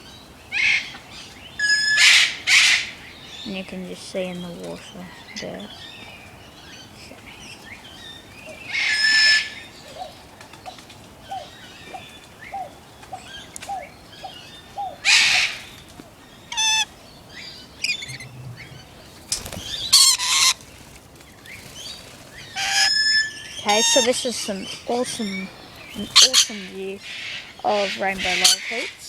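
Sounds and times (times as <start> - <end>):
birds screeching: 0.0 - 29.0
short repeated bird chirps: 16.5 - 20.6.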